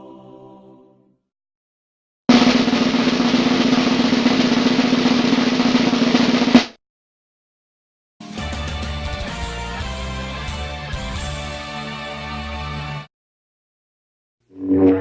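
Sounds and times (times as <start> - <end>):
snare drum roll: 2.3 - 6.8.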